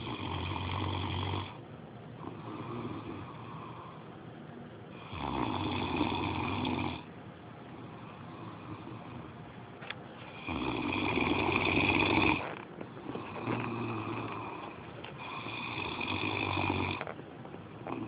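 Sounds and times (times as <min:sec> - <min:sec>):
slow snoring: 0:00.0 - 0:01.6, 0:02.2 - 0:04.1, 0:04.9 - 0:07.1, 0:07.8 - 0:09.4, 0:10.2 - 0:17.2, 0:17.8 - 0:18.0.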